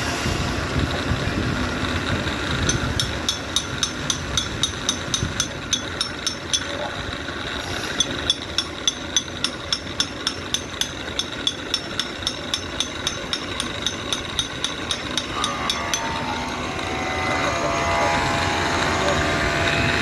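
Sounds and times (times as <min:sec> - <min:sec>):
lathe rumble: 0:00.0 - 0:20.0
sharp ticking: 0:02.6 - 0:06.8, 0:08.0 - 0:17.0.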